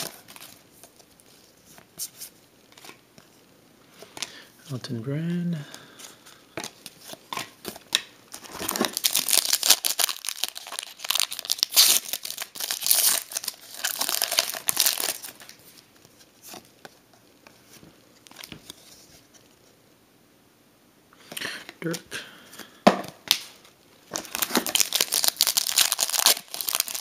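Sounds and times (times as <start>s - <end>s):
foil wrapper crinkling and tearing: 7.4s - 15.6s, 24.1s - 27.0s.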